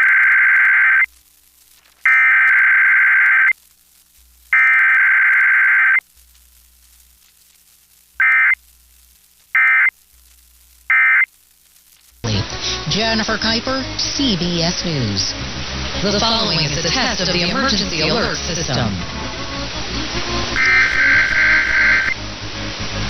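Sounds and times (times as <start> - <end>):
buzzing digital data bursts: 0.0 - 7.1, 8.1 - 10.1, 10.8 - 12.2, 20.5 - 22.2.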